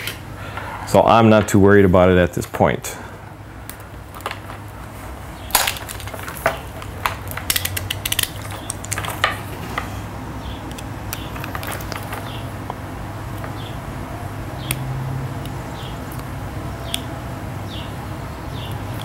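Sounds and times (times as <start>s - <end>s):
small parts and tools clicking: 5.5s - 9.9s, 10.7s - 12.4s.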